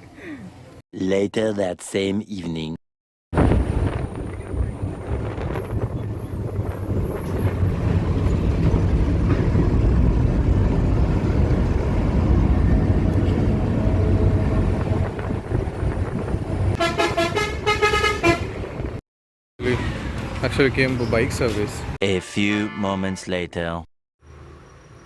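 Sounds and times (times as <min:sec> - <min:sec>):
road traffic rumble: 0:03.4 - 0:19.0, 0:19.6 - 0:22.0, 0:24.2 - 0:25.0
vehicle horn honking: 0:16.8 - 0:18.6, 0:22.2 - 0:23.2.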